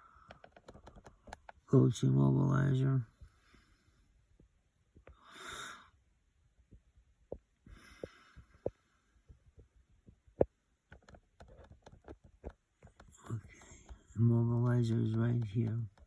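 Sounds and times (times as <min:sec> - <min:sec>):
light taps and clicks: 0:00.1 - 0:01.7, 0:06.7 - 0:16.0
short breaths: 0:07.7 - 0:08.8.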